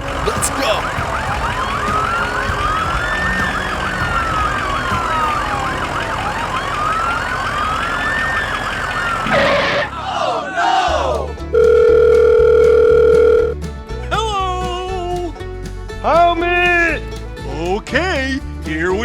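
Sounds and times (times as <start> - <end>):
wailing siren: 0.0 - 10.0
fast yelping siren: 0.1 - 9.9.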